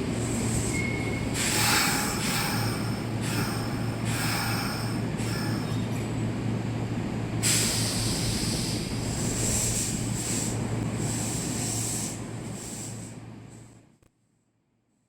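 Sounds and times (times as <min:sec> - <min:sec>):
electric train running hum: 0:00.0 - 0:13.7
air brakes hissing: 0:00.2 - 0:05.9, 0:07.4 - 0:13.2.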